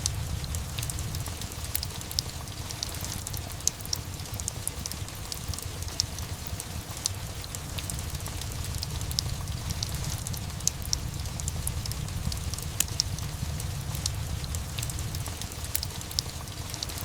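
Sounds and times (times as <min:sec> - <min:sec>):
low steady rumble: 0:00.0 - 0:17.0
steady rain hiss: 0:00.0 - 0:17.0
wood fire crackles and pops: 0:00.0 - 0:17.0.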